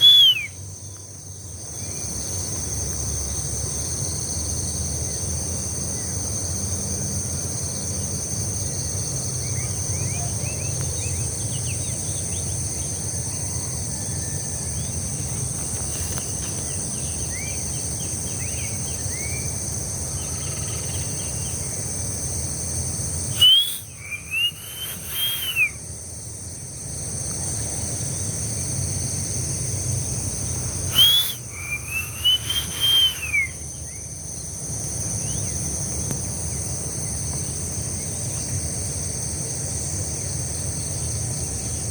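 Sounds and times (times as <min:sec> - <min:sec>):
bird whistled arching calls: 0:00.0 - 0:00.6, 0:23.3 - 0:25.8, 0:30.8 - 0:34.0
high insect drone: 0:00.0 - 0:41.9
short bird chirps: 0:23.4 - 0:25.8, 0:30.9 - 0:33.6.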